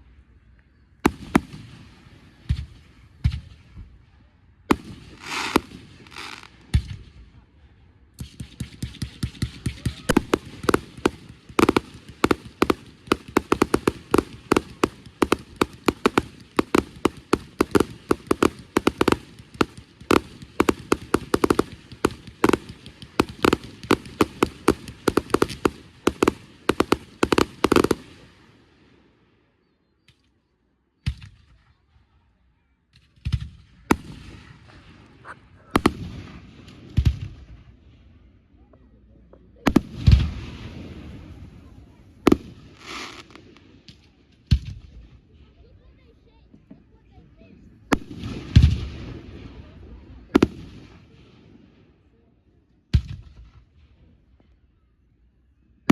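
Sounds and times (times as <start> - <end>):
single firework bangs: 4.7 - 7.0, 8.2 - 28.2, 42.2 - 44.8
fireworks crackling bangs: 4.7 - 7.1, 8.2 - 28.3, 33.2 - 37.6, 39.7 - 45.0, 47.9 - 51.2.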